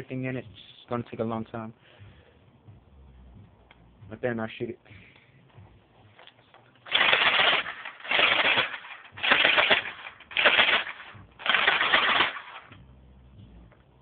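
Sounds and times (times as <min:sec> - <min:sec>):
airsoft gun rapid fire: 0:06.9 - 0:12.8.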